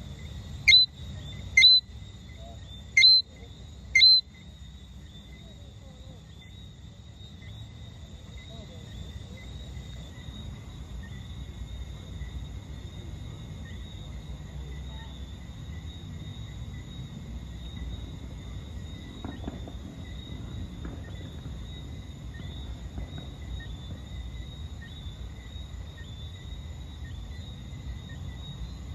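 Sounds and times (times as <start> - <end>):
frogs whistling chirps: 0.6 - 4.4.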